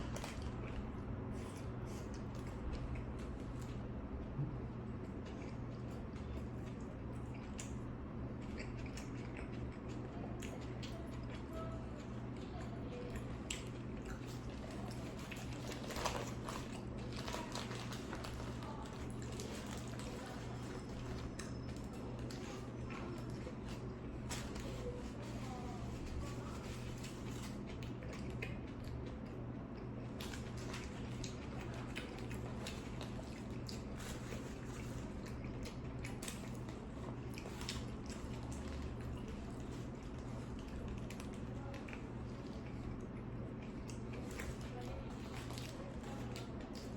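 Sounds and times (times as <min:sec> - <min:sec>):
chewing a sandwich: 0:00.0 - 0:46.9
steady low hum: 0:00.0 - 0:46.9
small crunches and clicks: 0:12.4 - 0:29.4.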